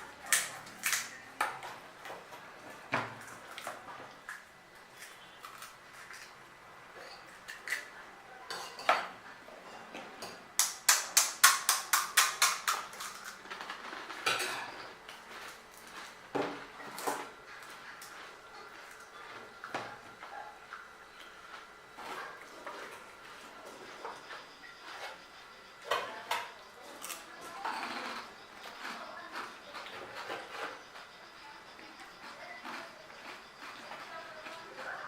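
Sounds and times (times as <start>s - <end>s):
crunching while eating: 0.0s - 1.8s, 3.2s - 6.5s, 7.1s - 8.0s, 10.8s - 25.4s, 26.5s - 35.0s
spoon and dishes clinking: 8.5s - 9.2s.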